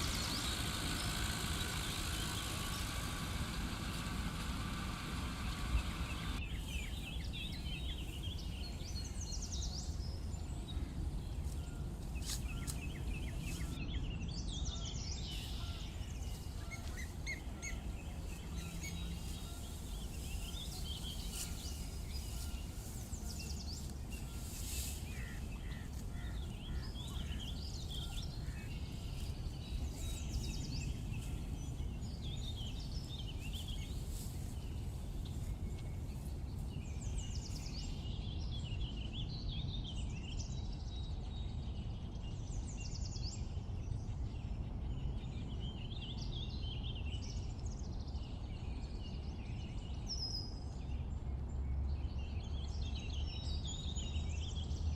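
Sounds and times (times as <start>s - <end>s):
steady low rumble: 0.0s - 42.6s
birds chirping: 0.0s - 42.8s.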